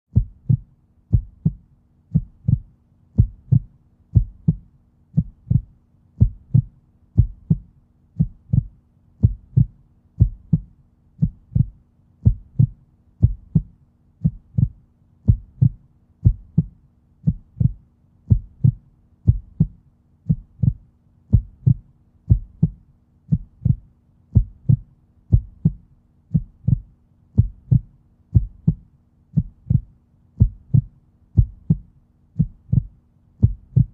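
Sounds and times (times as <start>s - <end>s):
heartbeat thumps: 0.1s - 33.9s.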